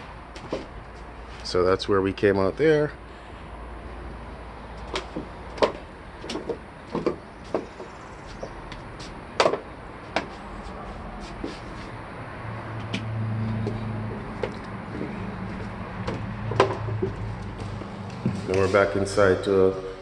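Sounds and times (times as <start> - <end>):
footsteps: 6.9 - 9.2, 10.0 - 12.0, 12.8 - 20.0.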